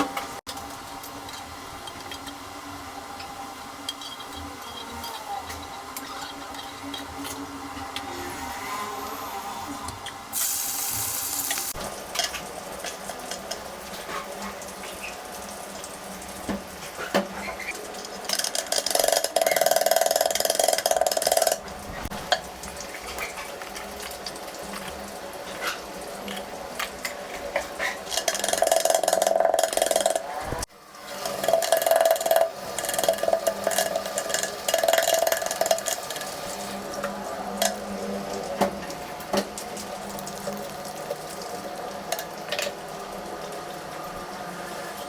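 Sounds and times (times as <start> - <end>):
sizzling hiss: 10.3 - 12.0.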